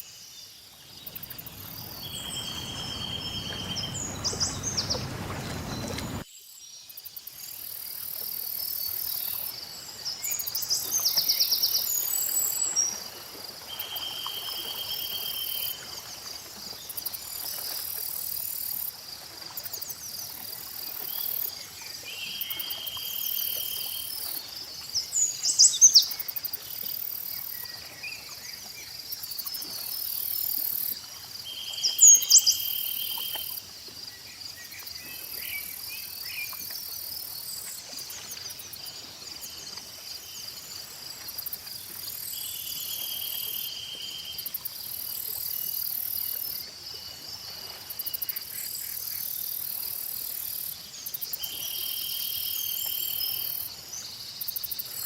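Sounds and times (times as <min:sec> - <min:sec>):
insects trilling: 0:00.0 - 0:06.3, 0:28.9 - 0:55.0
birds chirping: 0:00.9 - 0:06.2.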